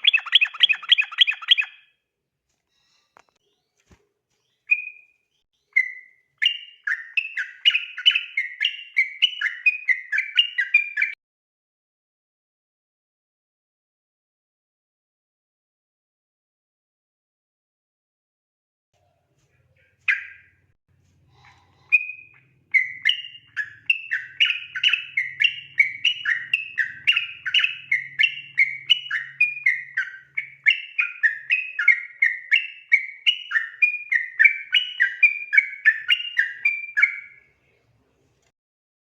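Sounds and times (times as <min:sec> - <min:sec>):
bird singing whistled notes: 0:00.0 - 0:02.0, 0:04.5 - 0:11.2, 0:20.1 - 0:20.5, 0:21.9 - 0:37.5.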